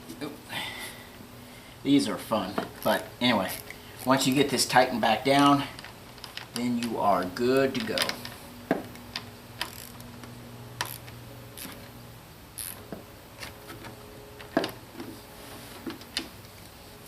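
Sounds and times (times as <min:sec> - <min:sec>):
low steady hum: 0:00.0 - 0:17.0
hand tools clicking and knocking: 0:07.6 - 0:10.1.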